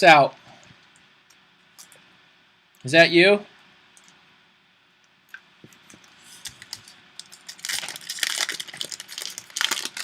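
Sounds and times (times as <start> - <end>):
packaging crinkling and tearing: 5.8 - 10.0.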